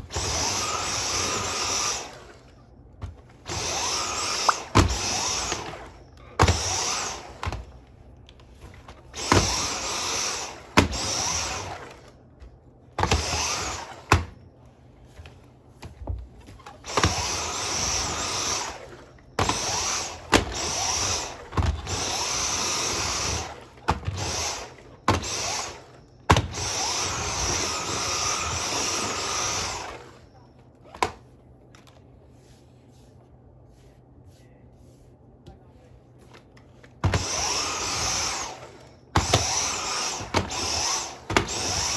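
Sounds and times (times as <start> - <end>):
vacuum motor high-pitched bursts: 0.0 - 2.6, 3.4 - 7.6, 9.1 - 12.1, 13.0 - 14.4, 16.8 - 30.4, 37.0 - 41.9.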